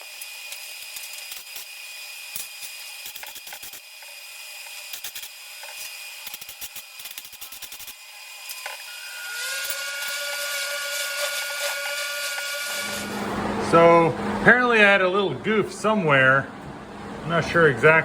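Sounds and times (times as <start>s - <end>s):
angle grinder whining: 0.0s - 14.1s.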